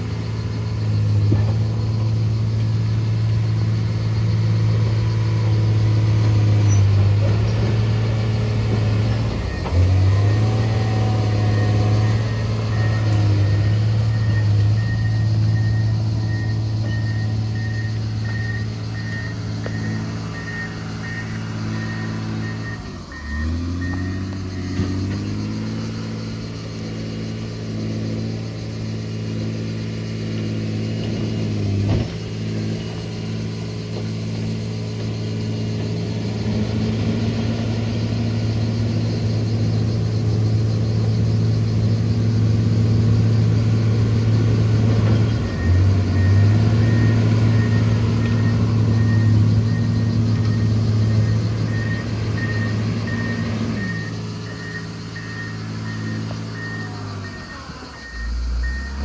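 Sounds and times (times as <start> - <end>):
grader diesel engine running: 0.0 - 59.0
reversing alarm beeping: 7.7 - 27.3, 44.7 - 59.0.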